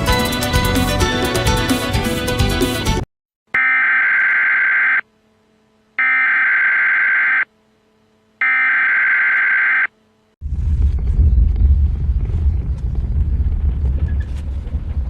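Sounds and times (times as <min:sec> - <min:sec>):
electronic buzzer tones: 0:03.5 - 0:05.1, 0:06.0 - 0:07.5, 0:08.4 - 0:09.9
low rumbling noise: 0:10.4 - 0:15.0.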